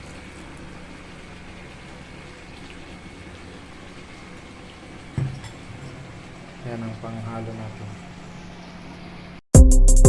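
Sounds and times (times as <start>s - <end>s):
pot simmering and bubbling: 0.0s - 6.8s.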